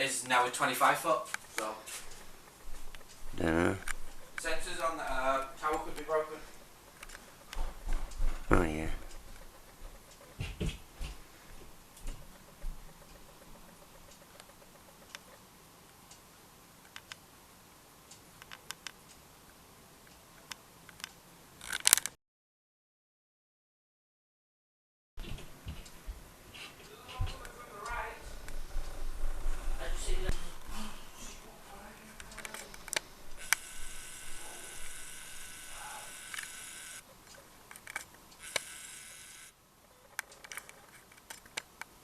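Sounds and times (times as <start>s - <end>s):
knocks and rustling near microphone: 9.8s - 12.8s, 25.2s - 27.4s
faint hiss: 29.7s - 39.8s
camera zoom motor whine: 33.3s - 37.0s, 38.4s - 39.6s
camera handling clicks: 36.3s - 36.6s.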